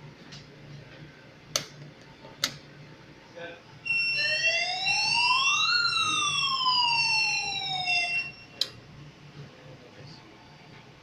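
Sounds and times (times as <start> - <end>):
steady high-pitched tone: 3.8 - 8.6
fire alarm siren: 3.9 - 8.6.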